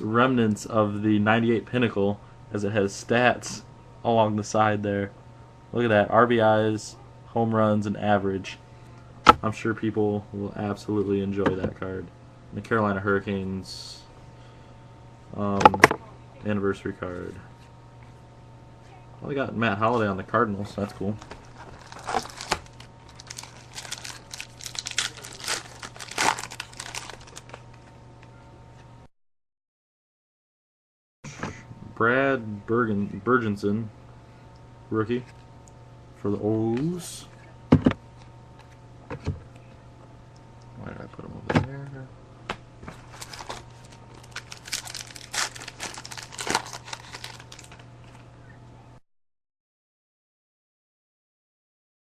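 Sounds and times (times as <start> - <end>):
steady low hum: 0.0 - 29.1, 31.2 - 49.0
foil wrapper crinkling: 20.8 - 27.9, 42.9 - 48.2.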